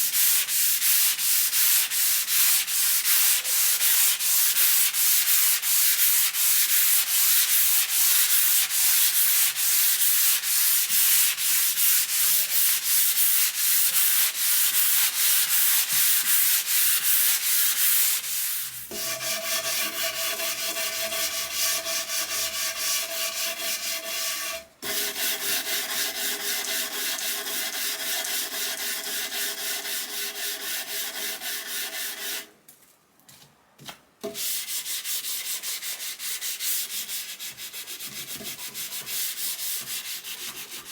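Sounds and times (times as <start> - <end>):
wood being sanded: 0.0 - 32.4.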